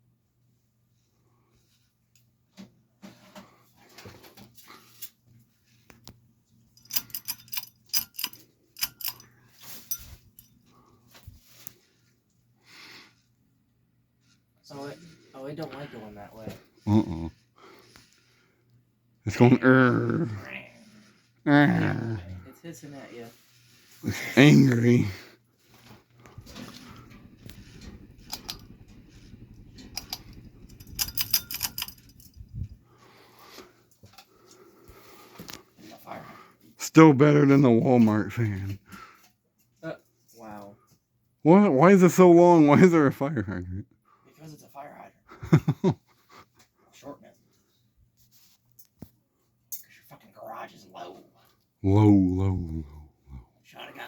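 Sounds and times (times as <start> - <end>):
fan clicking and rattling: 6.8 - 10.6, 26.1 - 32.9
metal parts clinking: 6.8 - 10.6, 26.5 - 32.5
low steady hum: 23.4 - 33.3.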